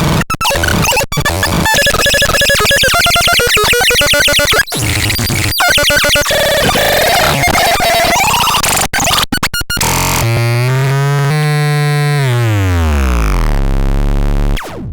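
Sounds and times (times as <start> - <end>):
synthesizer harsh noise: 0.0 - 9.2.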